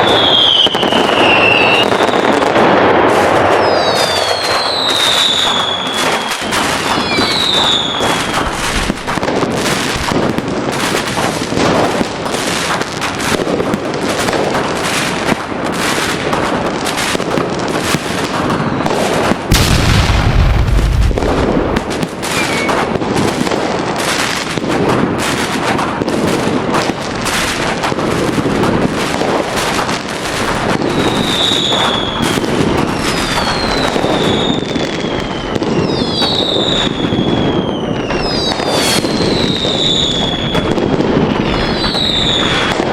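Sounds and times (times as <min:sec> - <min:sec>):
fireworks crackling bangs: 0:00.0 - 0:42.9
whistling fireworks: 0:00.0 - 0:42.9
deep firework boom: 0:18.8 - 0:23.0.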